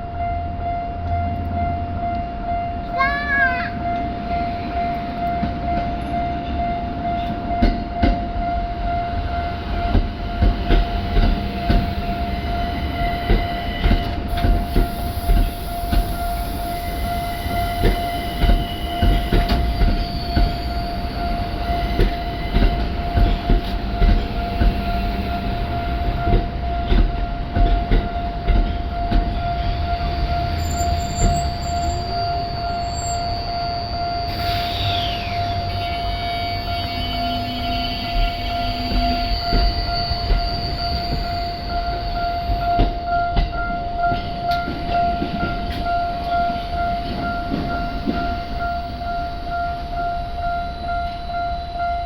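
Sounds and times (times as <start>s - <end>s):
crossing alarm steady high tone: 0.0s - 52.0s
train wheels clacking over rail joints: 9.8s - 12.2s, 17.7s - 31.4s.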